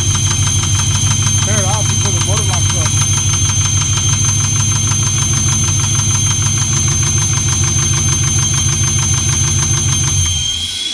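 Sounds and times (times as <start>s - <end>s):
engine idling with rhythmic knock: 0.0s - 10.9s.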